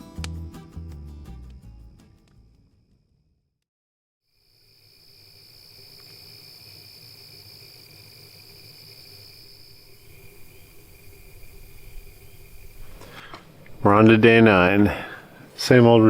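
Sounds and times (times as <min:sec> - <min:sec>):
music: 0:00.0 - 0:03.6
high-pitched insect drone: 0:04.3 - 0:13.1.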